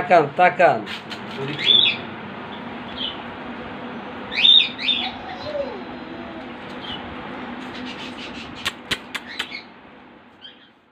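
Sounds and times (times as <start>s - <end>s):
steady low hum: 0.0s - 10.9s
birds chirping: 1.5s - 9.8s.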